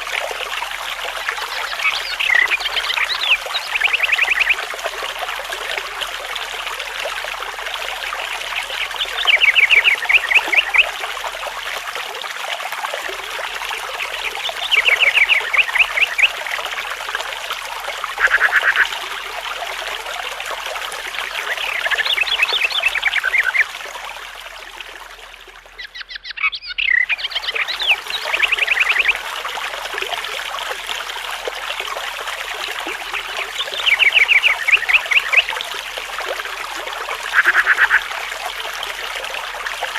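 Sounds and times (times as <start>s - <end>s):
rapid trilled animal calls: 18.1s - 19.0s, 37.2s - 38.2s.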